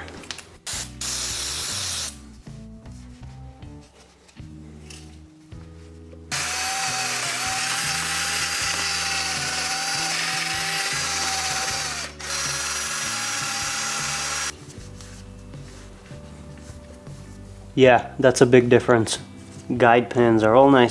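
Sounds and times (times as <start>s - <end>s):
power drill whining: 6.3s - 14.6s.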